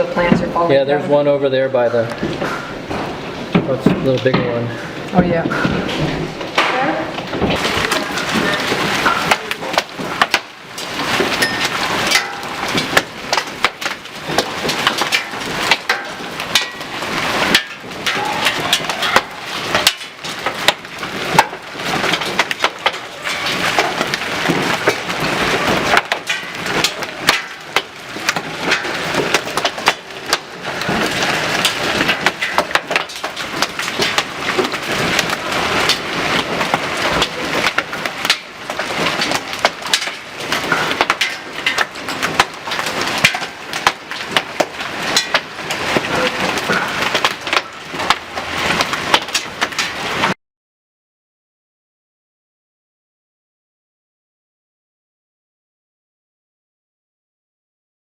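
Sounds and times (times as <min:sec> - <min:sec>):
hailstones striking hard surfaces: 0:00.0 - 0:50.4.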